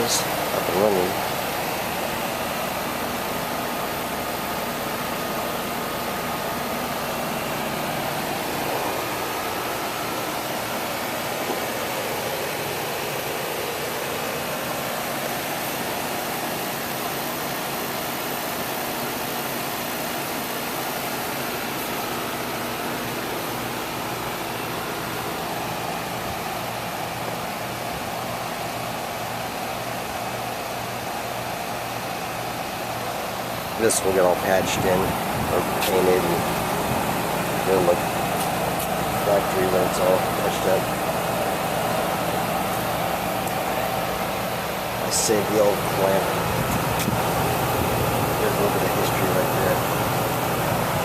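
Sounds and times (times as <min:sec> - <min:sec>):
condenser fan air rush: 0:00.0 - 0:51.0
low steady hum: 0:24.8 - 0:51.0.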